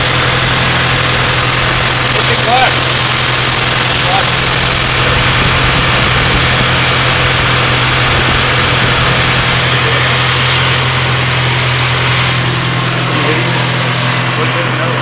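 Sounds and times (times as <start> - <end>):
car engine idling: 0.0 - 15.0
transmission noise: 0.0 - 15.0.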